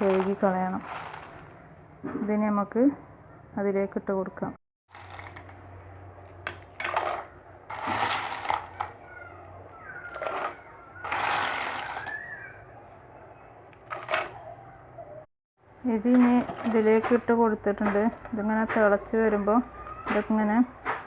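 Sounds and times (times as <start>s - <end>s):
clam shells clattering: 0.0s - 1.6s, 10.1s - 12.2s.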